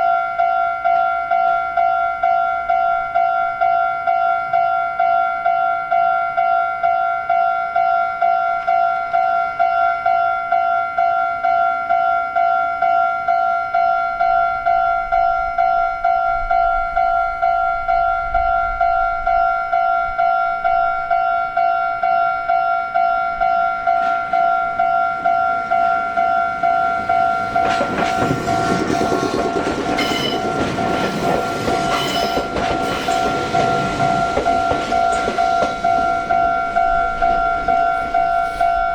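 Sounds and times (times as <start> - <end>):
level crossing bell ringing: 18.8 - 29.2
train wheels clattering on rails: 23.4 - 38.9.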